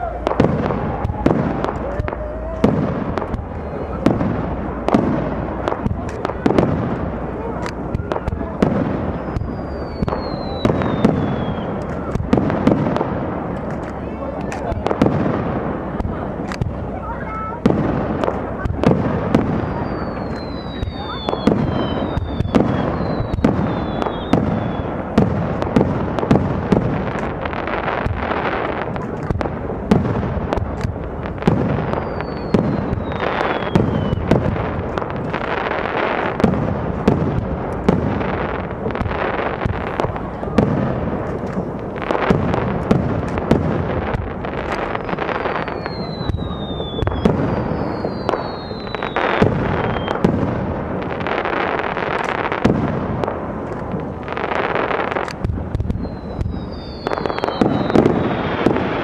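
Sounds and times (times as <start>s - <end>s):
falling firework whistles: 0.0s - 5.2s, 7.6s - 13.0s, 17.4s - 26.8s, 30.7s - 37.2s, 37.8s - 50.5s, 54.4s - 59.0s
firework crackle: 0.0s - 59.0s.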